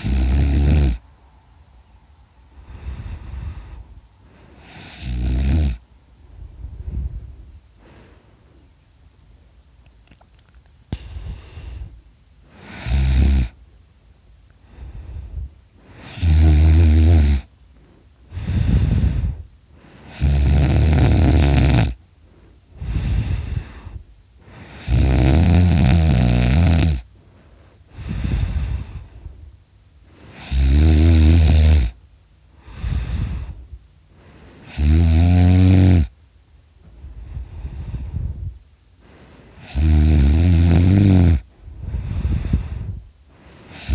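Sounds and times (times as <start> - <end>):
person snoring loudly: 0.0 - 1.0, 4.6 - 5.8, 12.5 - 13.6, 15.9 - 17.5, 18.3 - 22.0, 22.8 - 27.1, 30.2 - 32.0, 34.6 - 36.1, 39.3 - 43.9
quiet breaths: 0.0 - 43.9.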